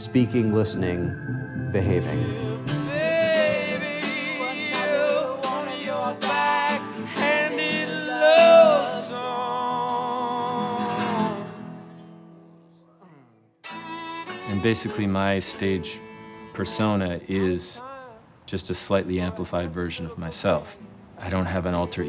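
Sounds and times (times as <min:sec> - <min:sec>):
person singing: 0:00.0 - 0:11.7, 0:14.4 - 0:18.3
plucked strings: 0:00.6 - 0:05.7.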